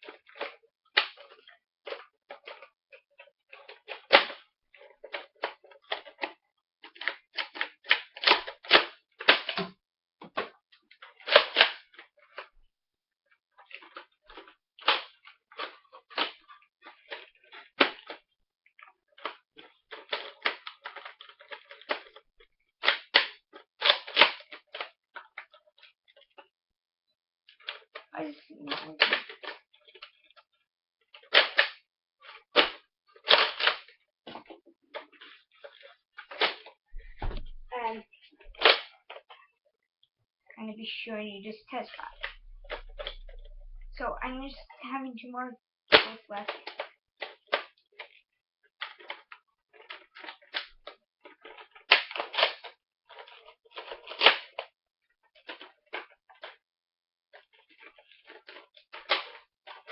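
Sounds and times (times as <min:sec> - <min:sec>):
toy blaster plastic clacks: 0:00.0 - 0:09.7, 0:11.1 - 0:12.5, 0:13.6 - 0:18.2, 0:19.2 - 0:22.2, 0:22.8 - 0:26.4, 0:27.5 - 0:30.5, 0:31.1 - 0:36.8, 0:37.4 - 0:39.4, 0:45.9 - 0:48.2, 0:48.8 - 0:56.6, 0:57.3 - 0:59.9
plastic toy blaster clicking: 0:06.9 - 0:09.7, 0:11.2 - 0:12.0, 0:22.8 - 0:25.4, 0:28.7 - 0:29.6, 0:31.3 - 0:31.8, 0:32.6 - 0:33.9, 0:38.5 - 0:38.9, 0:45.9 - 0:48.1, 0:51.5 - 0:54.7, 0:59.0 - 0:59.9.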